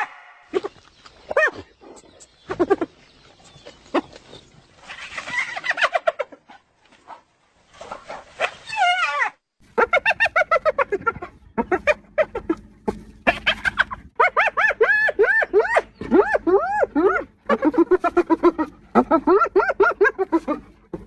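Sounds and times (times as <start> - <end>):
hyenas calling: 8.4 - 21.0.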